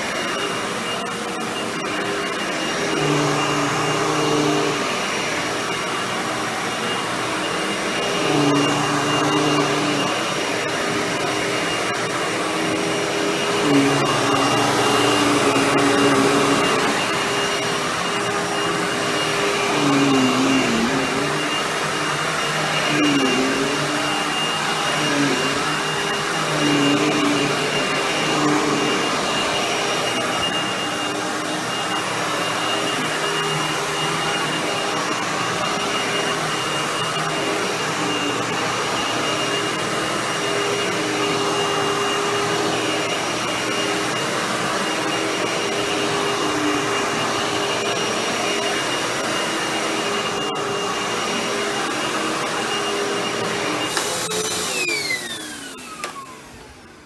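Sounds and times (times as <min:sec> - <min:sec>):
vacuum cleaner running on carpet: 0:00.0 - 0:57.0.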